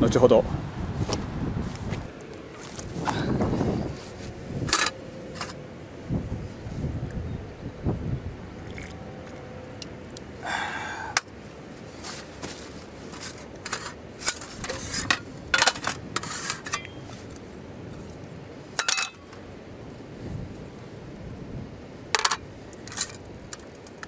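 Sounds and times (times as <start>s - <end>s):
metal utensils rattling: 4.7s - 5.5s, 13.2s - 16.9s, 18.8s - 19.3s, 22.2s - 23.2s
metal cookware clinking and scraping: 18.8s - 19.2s.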